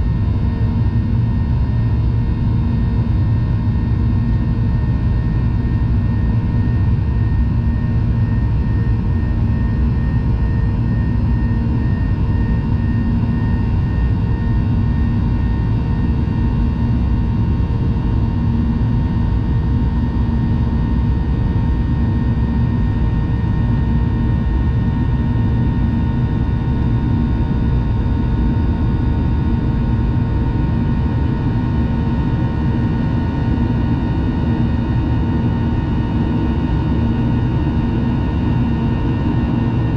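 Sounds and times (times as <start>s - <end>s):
airliner cabin engine roar: 0.0s - 39.9s.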